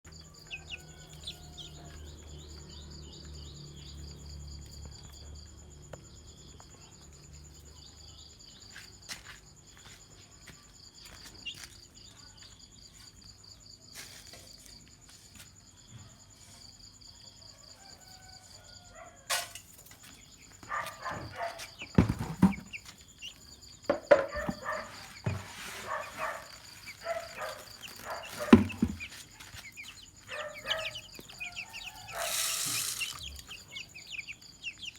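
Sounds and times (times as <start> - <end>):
chicks chirping: 0.1 - 5.2, 19.9 - 34.9
hen clucking: 27.1 - 34.1.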